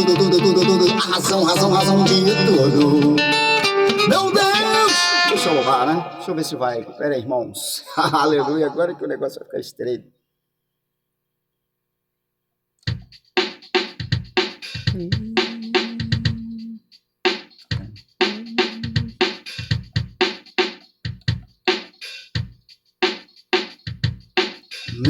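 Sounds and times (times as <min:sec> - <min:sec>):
drum kit beat: 0:00.0 - 0:06.2, 0:12.8 - 0:25.0
held low note: 0:14.9 - 0:16.8.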